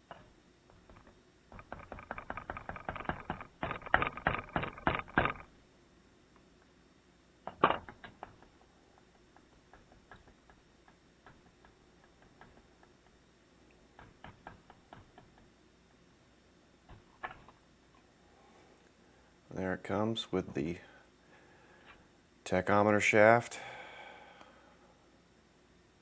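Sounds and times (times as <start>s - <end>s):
rapid clicks and taps: 0.1s - 5.5s, 7.4s - 15.6s.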